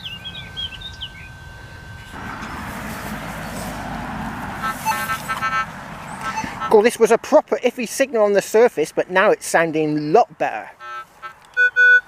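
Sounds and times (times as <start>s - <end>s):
thin electronic tone: 0.0s - 3.8s
rushing noise with low rumble: 0.0s - 6.7s
birds chirping: 0.0s - 7.2s, 8.1s - 12.0s
metal detector short beeps: 4.6s - 6.8s.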